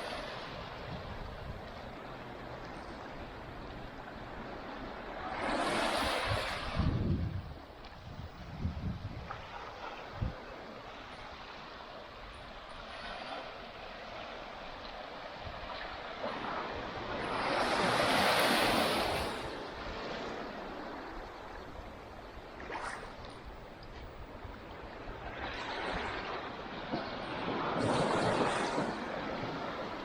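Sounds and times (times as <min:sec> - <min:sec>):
waves washing onto sandy beach: 0:00.0 - 0:23.5, 0:24.3 - 0:30.0
wave breaking: 0:04.0 - 0:07.9, 0:15.7 - 0:21.4, 0:25.1 - 0:30.0.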